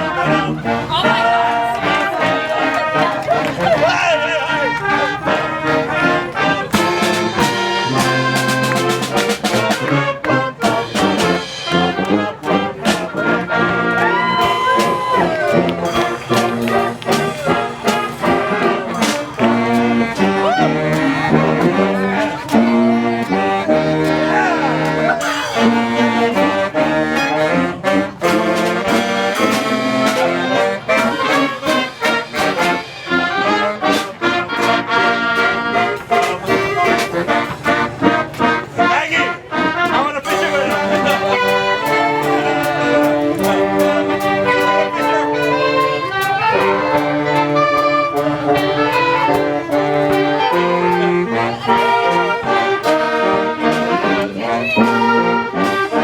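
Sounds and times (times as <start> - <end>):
brass band playing lively tune: 0.0 - 56.0
drum strikes: 6.5 - 13.4, 14.3 - 22.8.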